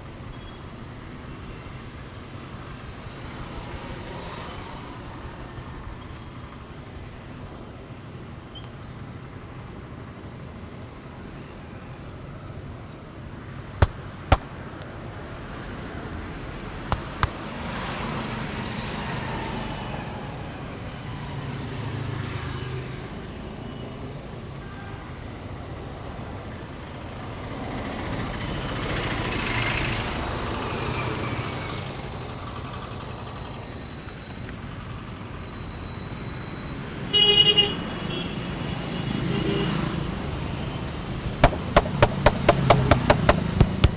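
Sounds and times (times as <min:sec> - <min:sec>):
sharp snaps: 0:13.8 - 0:15.0, 0:16.9 - 0:17.6, 0:41.4 - 0:43.9.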